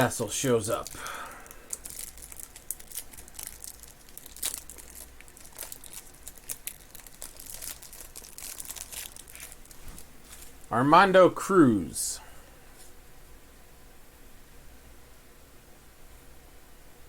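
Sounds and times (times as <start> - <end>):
plastic wrapping crinkling: 0.0 - 10.7.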